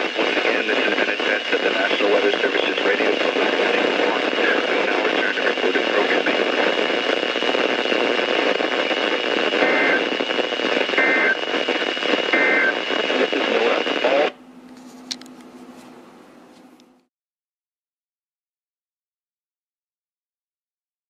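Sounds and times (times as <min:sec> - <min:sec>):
radio static hiss: 0:00.0 - 0:14.4
faint hum: 0:00.0 - 0:17.1.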